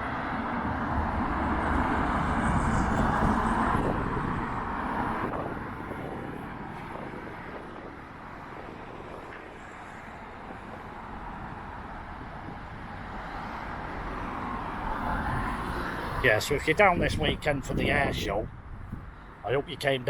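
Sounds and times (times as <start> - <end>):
background traffic: 0.0 - 20.0
wind: 0.0 - 20.0
vehicle passing: 0.6 - 7.6.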